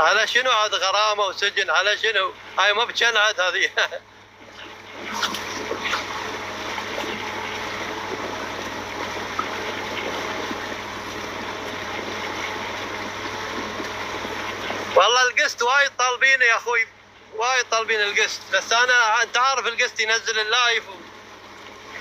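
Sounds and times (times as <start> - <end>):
low steady hum: 0.0 - 22.0
water rushing and splashing: 0.1 - 15.8.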